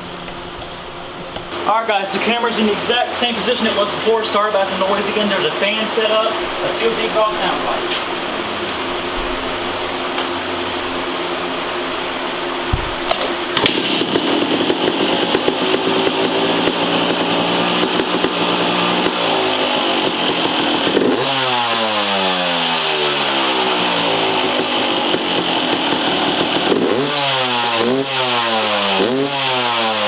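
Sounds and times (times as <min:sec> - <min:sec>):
steady fan hum: 0:00.0 - 0:30.0
two-stroke dirt bike engine: 0:13.0 - 0:30.0.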